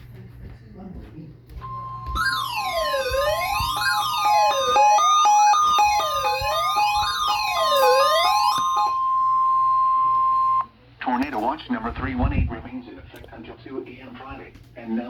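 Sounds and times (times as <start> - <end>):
steady warning alarm tone: 1.6 - 10.7
electronic siren wailing: 1.7 - 10.7.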